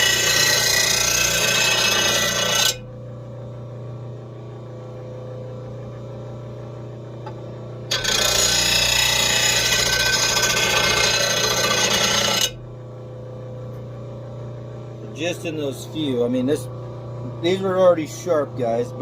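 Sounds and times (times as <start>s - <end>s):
blade grinding on wheel: 0.0s - 2.8s, 7.9s - 12.6s
grinding wheel humming: 0.0s - 3.1s, 7.8s - 12.8s.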